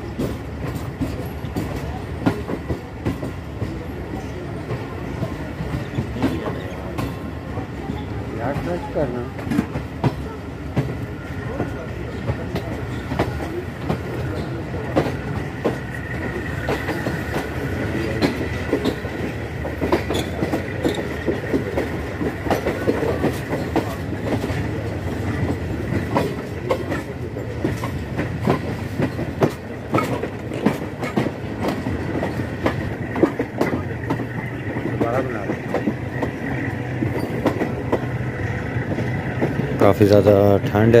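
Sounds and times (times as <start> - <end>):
train low rumble: 0.0 - 41.0
wheels clacking over rail joints: 0.0 - 41.0.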